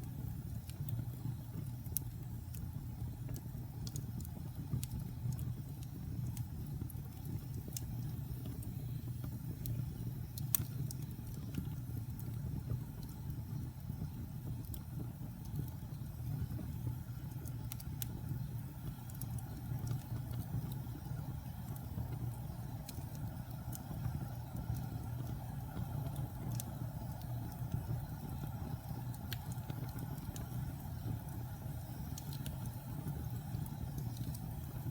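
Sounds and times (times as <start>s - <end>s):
log fire crackling and popping: 0.0s - 34.9s.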